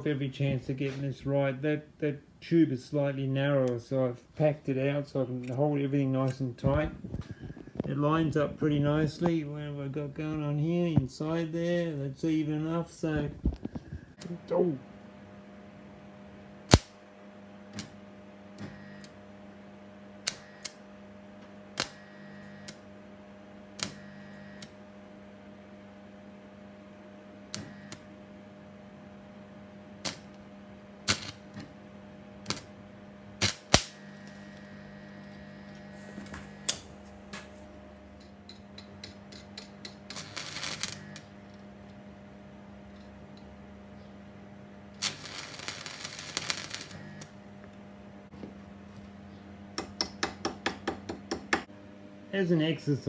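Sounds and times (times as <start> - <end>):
steady low hum: 0.0 - 53.0
arc welder snapping and crackling: 16.6 - 17.1, 17.7 - 18.0, 18.6 - 19.2, 20.2 - 20.9, 21.5 - 22.9, 23.7 - 24.8, 27.5 - 28.1, 30.0 - 31.8, 32.4 - 32.8, 33.4 - 42.0, 44.9 - 47.6.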